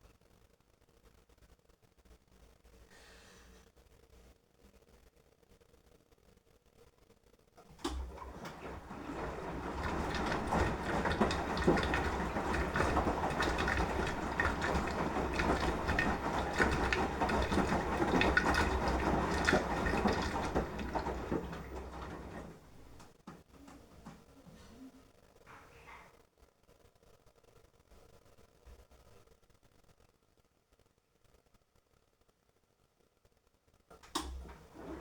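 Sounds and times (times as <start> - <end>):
washing machine motor hum: 7.7 - 24.8, 34.0 - 35.0
wet laundry sloshing and tumbling: 7.8 - 24.2, 34.2 - 35.0.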